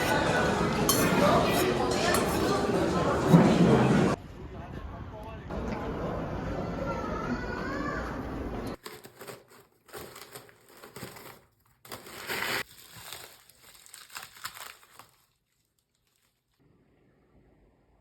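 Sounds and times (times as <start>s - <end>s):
material crinkling and rustling: 8.8s - 16.6s.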